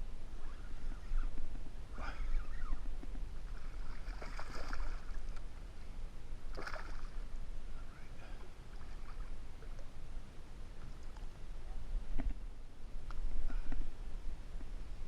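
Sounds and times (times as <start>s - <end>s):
low steady rumble: 0.0s - 15.0s
water splashing: 3.4s - 5.4s, 6.5s - 7.2s.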